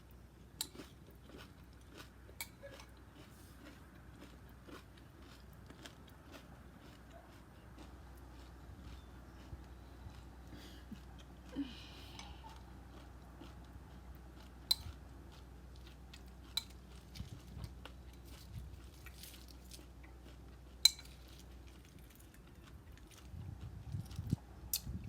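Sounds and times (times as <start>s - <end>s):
person chewing cereal: 0.0s - 25.0s
spoon clicking against bowl: 20.8s - 21.1s.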